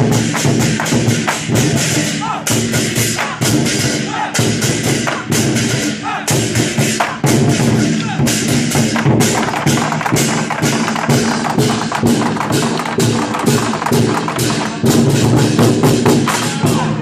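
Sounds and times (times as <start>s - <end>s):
cymbals crashing: 0.0s - 16.8s
large drums beating: 0.0s - 17.0s.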